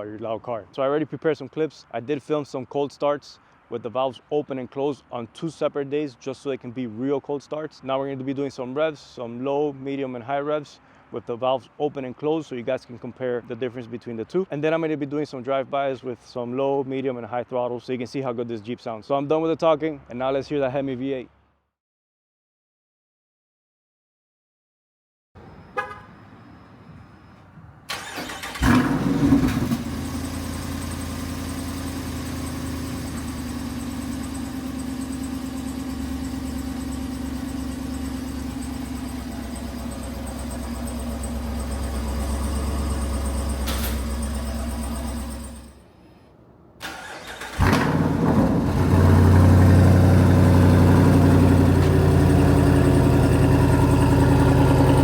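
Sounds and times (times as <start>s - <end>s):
engine cranking and starting: 27.9s - 31.1s, 36.7s - 45.7s, 46.8s - 55.0s
engine idling: 28.0s - 45.7s, 47.5s - 55.0s.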